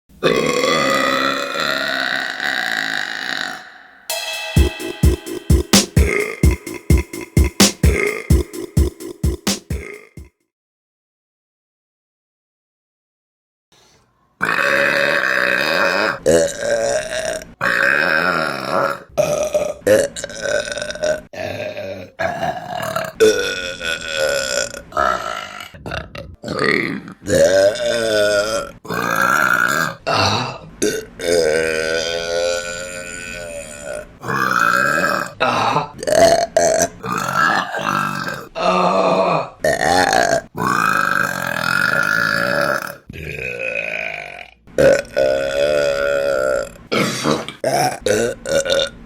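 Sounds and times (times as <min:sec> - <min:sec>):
women burping loudly: 0:00.2 - 0:03.7.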